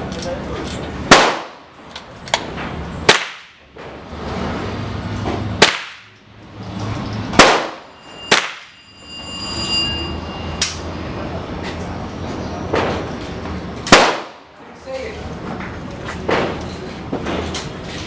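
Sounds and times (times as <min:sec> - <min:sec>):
gunshots with echoes: 0:01.1 - 0:01.6, 0:07.4 - 0:08.6, 0:13.9 - 0:14.4
high ringing tone: 0:07.8 - 0:11.1.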